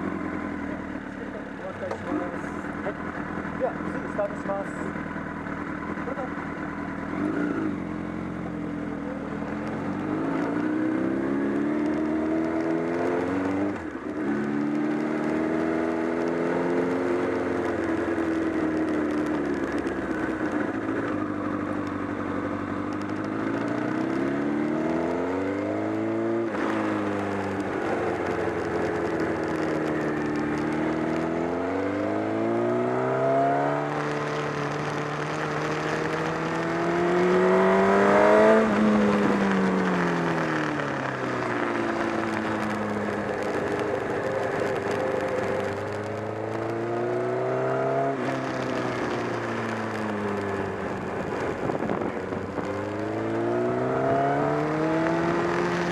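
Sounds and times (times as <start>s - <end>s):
motorcycle engine revving: 0.0s - 55.9s.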